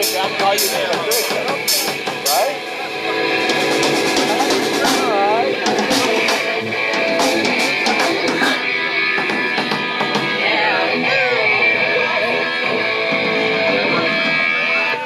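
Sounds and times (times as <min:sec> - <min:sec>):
drum hits: 0:00.0 - 0:02.6, 0:03.4 - 0:10.6
loud electric guitar: 0:00.0 - 0:15.0.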